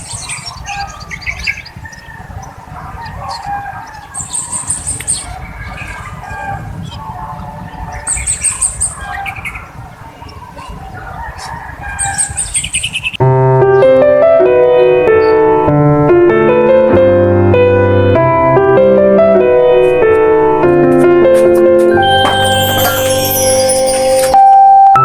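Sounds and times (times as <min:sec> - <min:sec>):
birds chirping: 0:00.0 - 0:17.0, 0:19.0 - 0:24.4
background noise: 0:00.0 - 0:25.0
soft piano music: 0:13.2 - 0:25.0.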